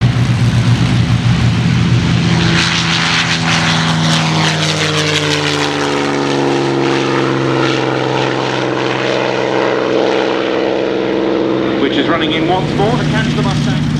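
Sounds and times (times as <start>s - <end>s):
propeller aircraft engine drone: 0.0s - 13.9s.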